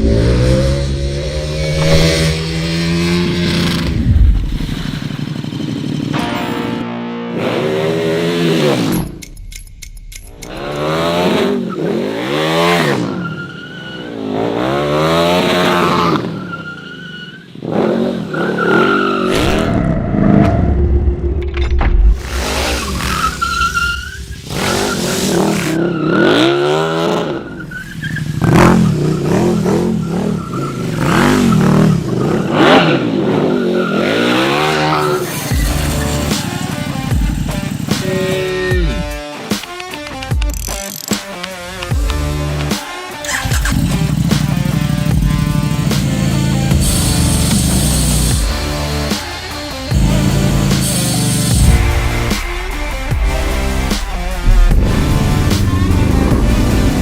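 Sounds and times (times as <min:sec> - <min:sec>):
motorcycle engine revving: 0:00.0 - 0:09.3, 0:10.1 - 0:13.2, 0:22.1 - 0:39.4, 0:40.4 - 0:57.0
tyre squealing: 0:22.2 - 0:26.6.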